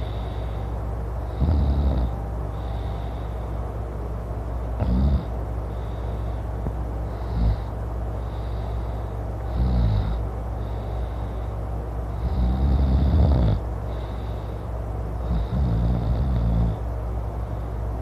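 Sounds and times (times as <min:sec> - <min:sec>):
quiet breaths: 0:00.0 - 0:18.0
man snoring loudly: 0:01.3 - 0:02.2, 0:04.8 - 0:05.3, 0:07.2 - 0:07.7, 0:09.5 - 0:10.2, 0:12.2 - 0:13.6, 0:15.2 - 0:16.8.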